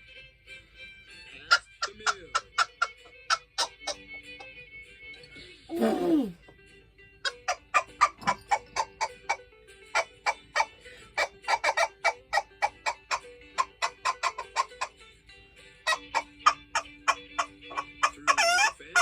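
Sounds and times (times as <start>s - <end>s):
music with clicking beat: 1.4s - 5.4s, 7.2s - 15.0s, 15.8s - 19.0s.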